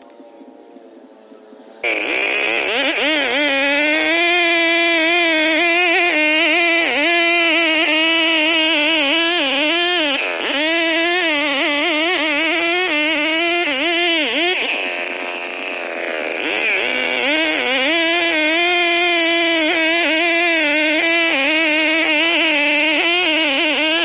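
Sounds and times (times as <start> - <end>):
chainsaw running at high revs: 1.8 - 24.0.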